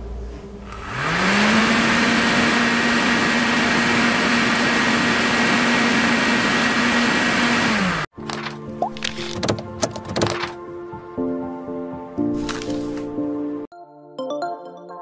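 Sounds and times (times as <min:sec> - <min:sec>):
electric fan motor with air rush: 0:00.0 - 0:08.1.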